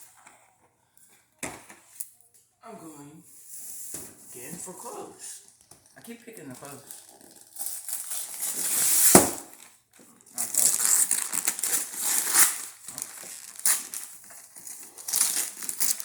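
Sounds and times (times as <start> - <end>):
packaging crinkling and tearing: 5.8 - 16.0.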